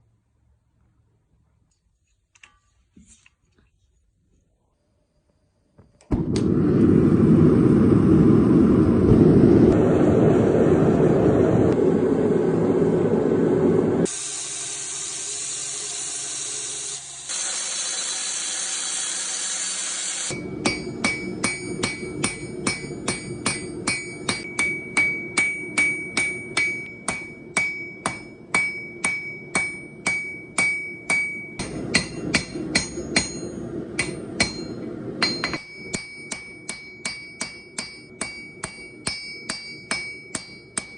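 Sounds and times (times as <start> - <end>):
hiss: 14.0 - 20.3
hammer striking metal: 20.3 - 40.9.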